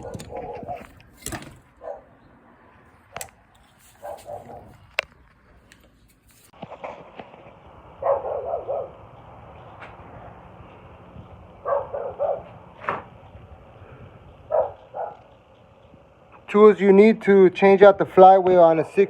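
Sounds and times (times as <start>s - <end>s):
dog yapping: 1.7s - 2.1s, 4.0s - 4.8s, 11.6s - 12.5s, 14.5s - 15.2s.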